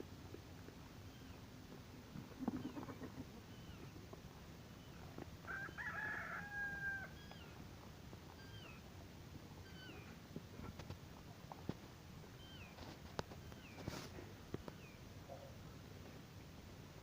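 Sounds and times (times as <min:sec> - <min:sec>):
small birds chirping: 0:01.0 - 0:01.5, 0:02.4 - 0:06.0, 0:07.1 - 0:10.8, 0:12.2 - 0:15.6
rooster crowing: 0:05.4 - 0:07.4.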